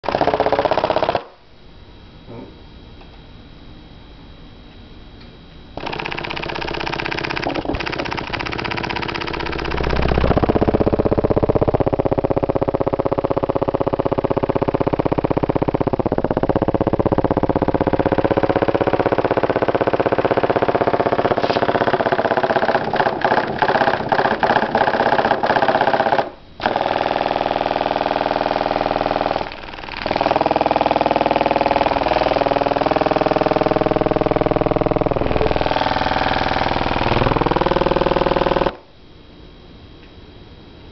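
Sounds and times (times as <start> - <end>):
distorted subwoofer bass: 9.8 - 22.1, 31.9 - 38.1.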